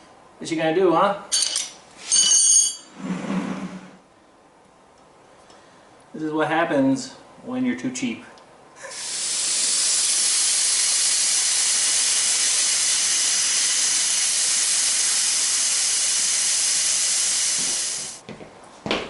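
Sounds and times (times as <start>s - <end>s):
rushing air hiss: 8.8s - 18.2s.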